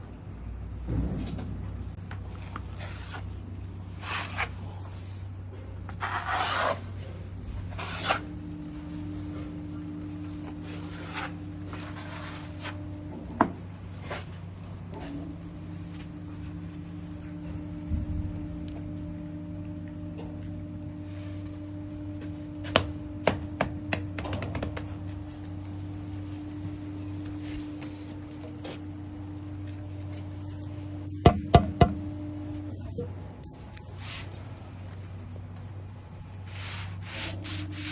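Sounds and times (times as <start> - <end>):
steady low hum: 0.0 - 37.9
rough scraping strokes: 6.0 - 6.8, 7.7 - 8.3, 10.6 - 12.8.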